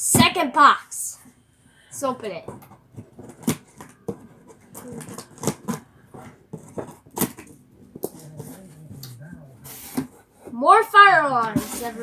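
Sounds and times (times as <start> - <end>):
cardboard clicks and rustles: 2.2 - 8.7.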